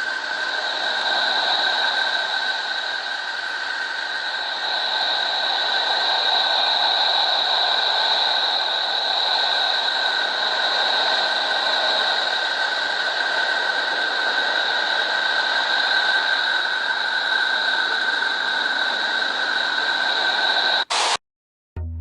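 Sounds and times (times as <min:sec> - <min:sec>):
hissing drone with held tones: 0:00.0 - 0:21.2
brief high burst: 0:20.8 - 0:21.2.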